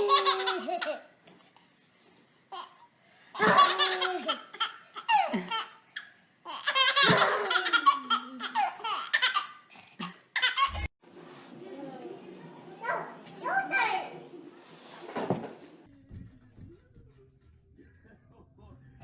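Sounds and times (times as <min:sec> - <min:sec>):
baby belly-laughing: 0:03.4 - 0:10.9.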